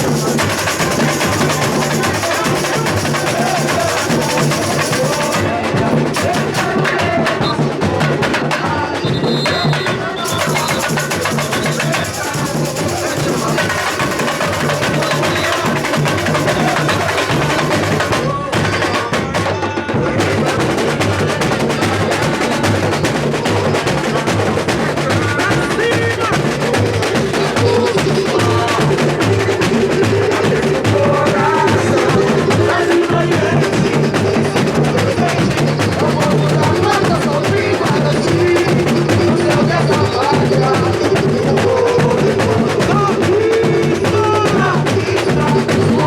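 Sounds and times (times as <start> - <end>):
high hissing percussion: 0.0 - 7.0, 9.2 - 19.1
samba percussion ensemble: 0.0 - 46.0.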